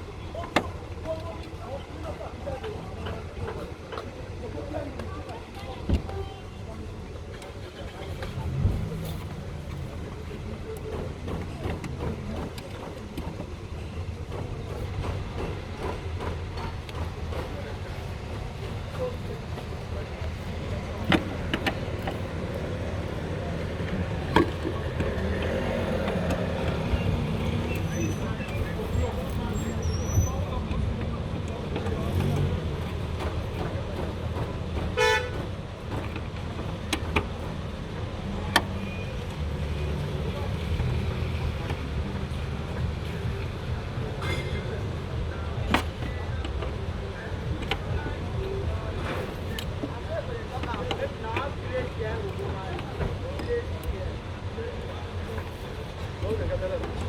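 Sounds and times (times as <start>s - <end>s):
faint voices: 0.0s - 57.0s
low engine rumble: 0.0s - 57.0s
car horn toot: 35.0s - 35.4s.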